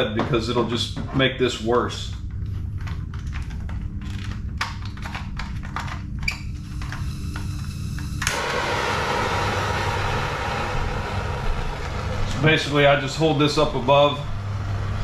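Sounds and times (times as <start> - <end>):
low steady hum: 0.0 - 15.0
steady hiss: 6.6 - 14.9.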